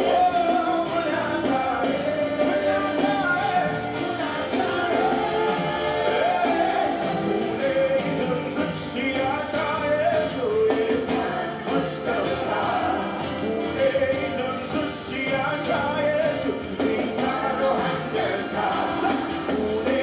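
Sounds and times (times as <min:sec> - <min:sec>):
live worship band playing: 0:00.0 - 0:20.0
person singing: 0:00.0 - 0:20.0.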